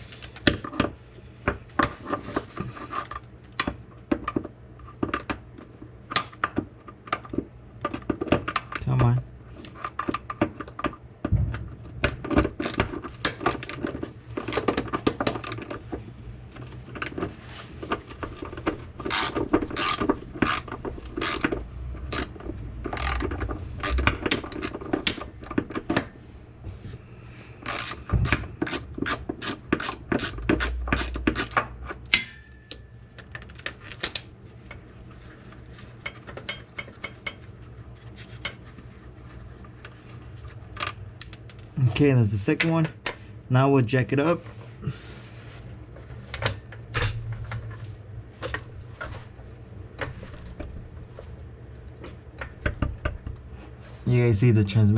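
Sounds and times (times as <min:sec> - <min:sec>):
ratchet wrench clicking: 0:22.1 - 0:24.8, 0:27.6 - 0:31.6.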